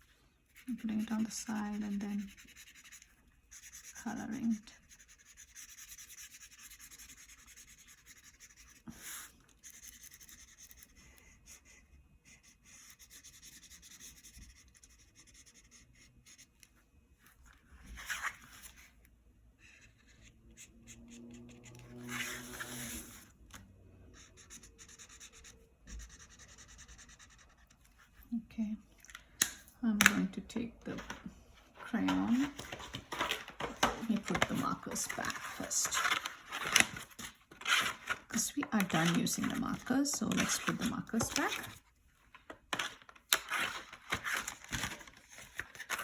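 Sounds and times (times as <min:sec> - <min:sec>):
marker scratching on paper: 0:00.5 - 0:16.5, 0:19.7 - 0:23.2, 0:24.2 - 0:28.2.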